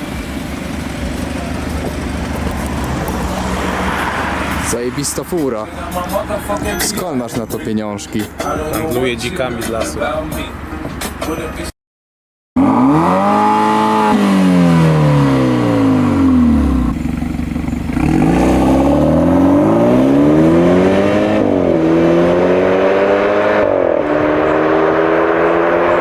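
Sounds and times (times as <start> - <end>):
car engine revving and accelerating: 0.0 - 6.8, 12.6 - 17.0, 17.9 - 26.0.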